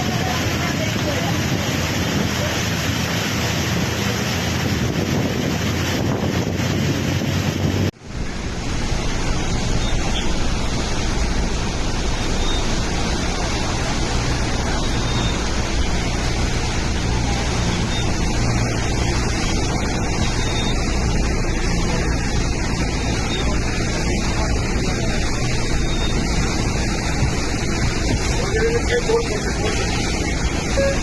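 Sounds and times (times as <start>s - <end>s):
water rushing: 0.0s - 31.0s
wind buffeting microphone: 0.0s - 31.0s
wind rushing: 1.0s - 21.8s.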